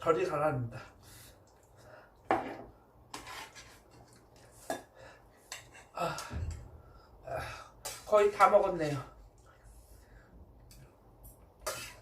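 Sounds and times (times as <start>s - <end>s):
utensils clinking against a bowl: 3.2s - 6.0s.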